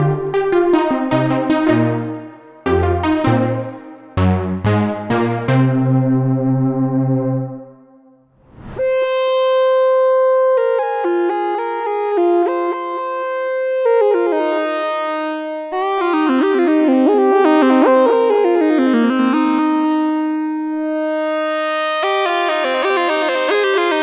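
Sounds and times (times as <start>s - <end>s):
synthesizer lead melody: 0.0s - 8.2s.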